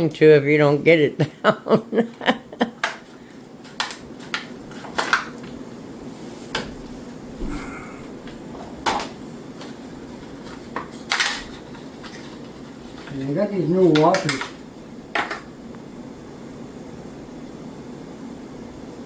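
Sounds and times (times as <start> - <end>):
tools clinking and knocking: 10.4 - 15.5.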